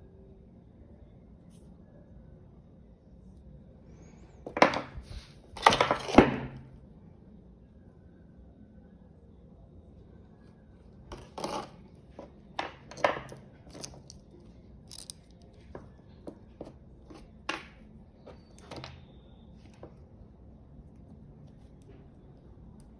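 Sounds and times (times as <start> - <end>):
small objects rustling: 11.1 - 15.9
small objects clicking and tapping: 11.1 - 19.1.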